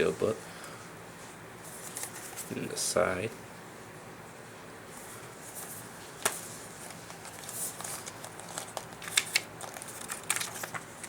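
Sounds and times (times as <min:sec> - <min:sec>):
paper crinkling and rustling: 0:01.7 - 0:02.6, 0:05.5 - 0:11.0.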